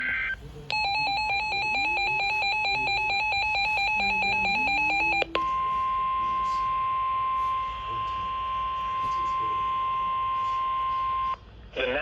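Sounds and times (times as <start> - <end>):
rapid electronic beeping: 0.0 - 6.4
steady warning alarm tone: 0.0 - 11.4.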